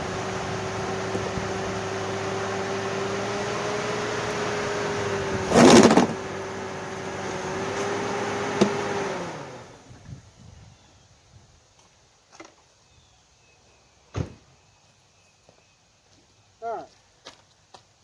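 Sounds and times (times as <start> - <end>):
car engine running: 0.0 - 9.8.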